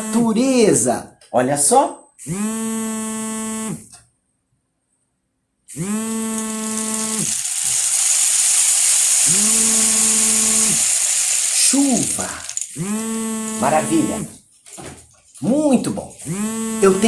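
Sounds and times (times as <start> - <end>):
short buzzing tones: 2.2 - 3.9, 5.7 - 8.4, 12.4 - 14.3, 16.2 - 17.0
falling rain hiss: 6.3 - 14.2.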